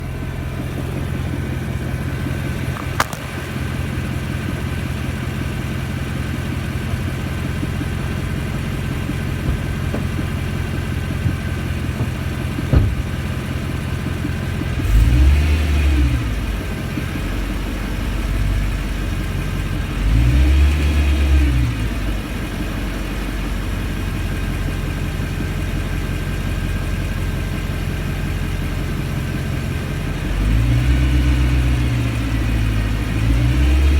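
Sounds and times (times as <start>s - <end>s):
car engine idling and revving: 0.0s - 33.9s.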